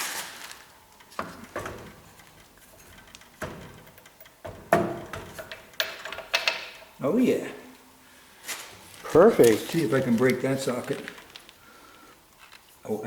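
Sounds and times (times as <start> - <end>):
metallic clinks and knocks of wrench: 1.0 - 7.0.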